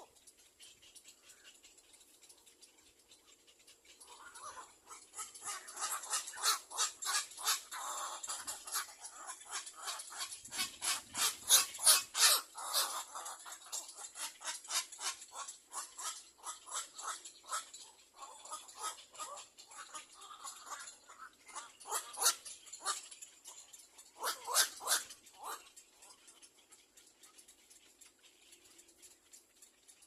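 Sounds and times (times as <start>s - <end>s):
chicks giving harsh begging calls: 4.0s - 13.3s.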